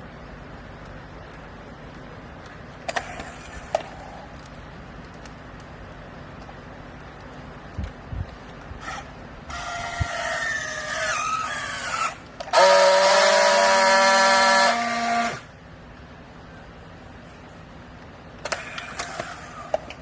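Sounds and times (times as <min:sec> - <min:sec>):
hydraulic pump whine: 0:08.8 - 0:15.6.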